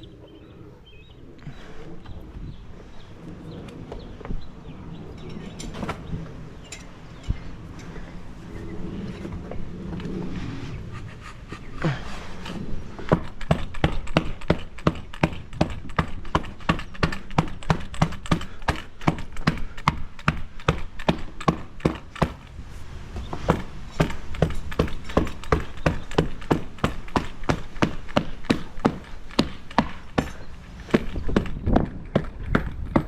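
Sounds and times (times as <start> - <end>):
tool knocking rapidly: 13.1 - 22.5, 23.5 - 33.0.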